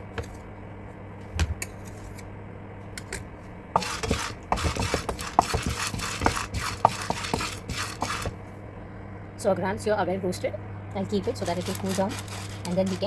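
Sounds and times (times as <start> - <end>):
spatula stirring grains in a pan: 3.8 - 8.4, 11.3 - 13.0.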